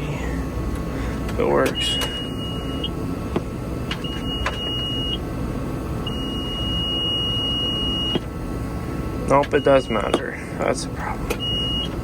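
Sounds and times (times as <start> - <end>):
high-pitched warning beeps: 1.7 - 2.9, 4.0 - 5.2, 6.1 - 8.2, 9.5 - 10.3, 11.4 - 12.0.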